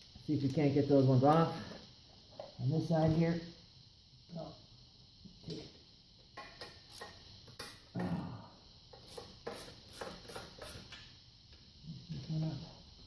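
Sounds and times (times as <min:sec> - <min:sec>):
socket ratchet clicking: 0:06.4 - 0:07.8, 0:08.9 - 0:11.0.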